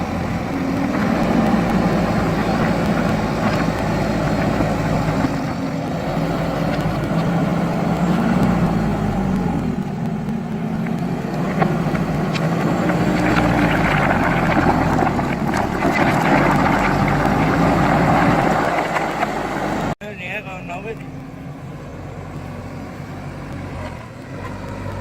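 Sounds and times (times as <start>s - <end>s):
diesel engine running: 0.0s - 25.0s
faint clicks: 0.5s - 17.6s.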